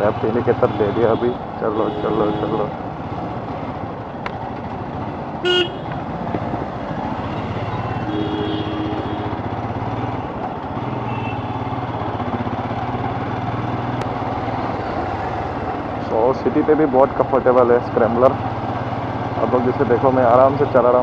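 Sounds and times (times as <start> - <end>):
vehicle horn toot: 0.7 - 2.7, 5.4 - 5.9, 8.0 - 9.4, 11.0 - 11.6
motorcycle engine running: 2.7 - 21.0.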